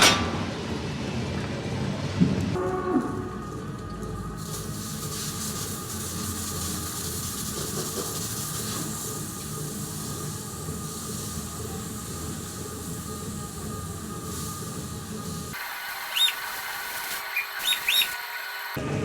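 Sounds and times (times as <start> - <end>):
machinery humming: 0.0 - 19.0
water spraying from a hose: 4.4 - 18.8.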